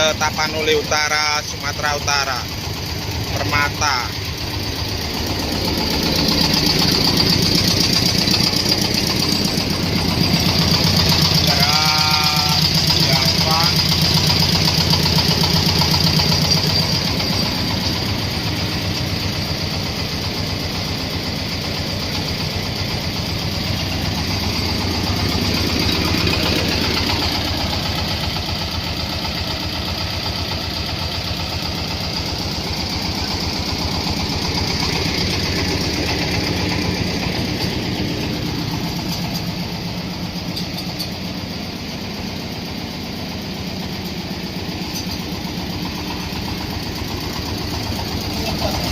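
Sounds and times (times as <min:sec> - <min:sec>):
corn sheller engine pulsing: 0:00.0 - 0:48.9
high whine: 0:05.0 - 0:14.4.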